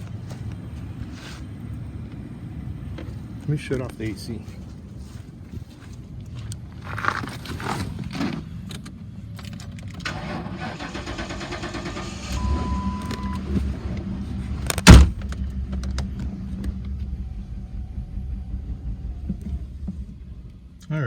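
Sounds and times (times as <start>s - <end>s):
engine rumbling: 0.0s - 21.0s
starter motor cranking: 10.0s - 12.6s
loud thump: 14.7s - 15.3s.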